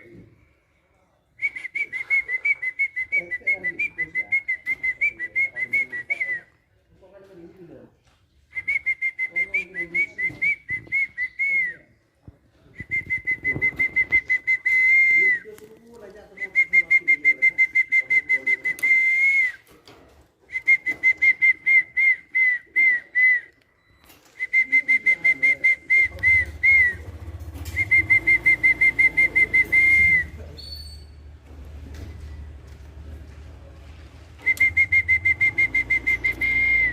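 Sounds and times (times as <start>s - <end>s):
high whistled call: 20.5s - 31.3s, 34.4s - 36.9s.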